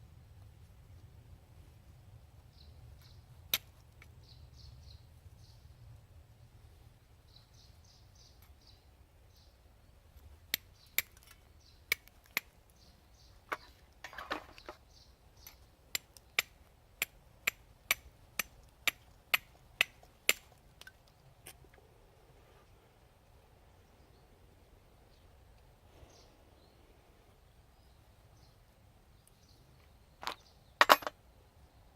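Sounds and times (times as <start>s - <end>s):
bird chirping: 2.4s - 3.4s, 4.0s - 5.9s, 7.1s - 16.6s, 23.8s - 31.9s
steel striking flint: 10.5s - 12.5s, 30.2s - 31.2s.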